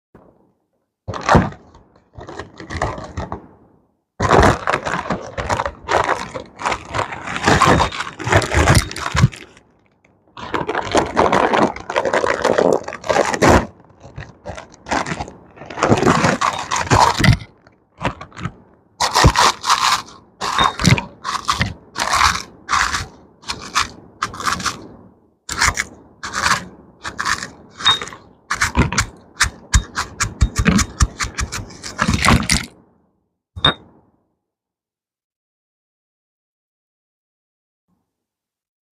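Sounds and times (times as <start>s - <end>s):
potato chips crunching: 10.4s - 24.8s, 25.5s - 32.7s.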